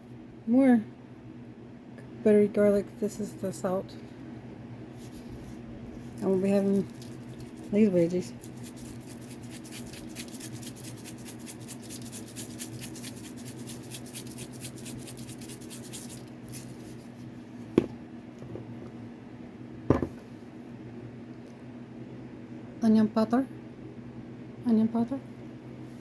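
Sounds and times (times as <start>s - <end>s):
steady low hum: 0.0s - 26.0s
seasoning shaker rattling: 6.0s - 17.2s.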